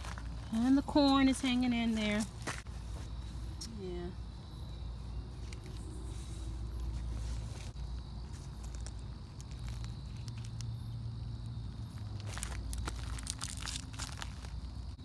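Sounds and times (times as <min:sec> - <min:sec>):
rustling of leaves: 0:04.8 - 0:15.0.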